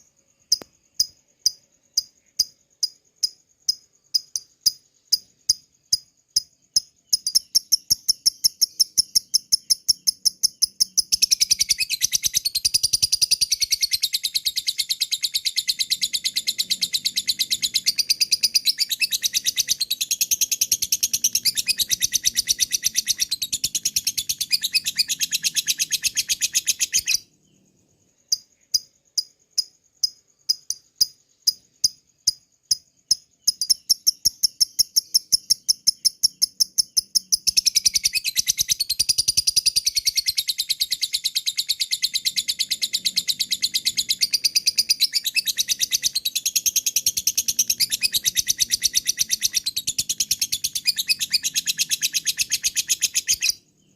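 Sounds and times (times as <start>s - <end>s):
bird rapid high ticks: 0.0s - 27.2s, 28.3s - 53.6s
bird chattering trill: 6.4s - 27.2s, 32.7s - 53.6s.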